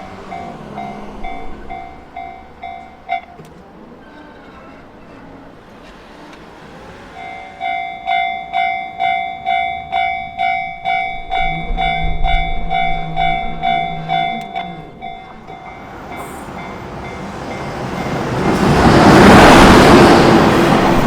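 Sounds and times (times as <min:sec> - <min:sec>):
level-crossing warning bell: 0:00.0 - 0:05.6, 0:07.1 - 0:21.0.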